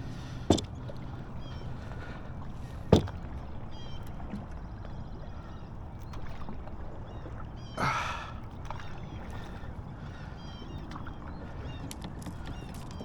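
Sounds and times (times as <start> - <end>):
low rumble on water: 0.0 - 13.0
kayak gear knocks and clicks: 0.5 - 1.0, 2.9 - 3.3.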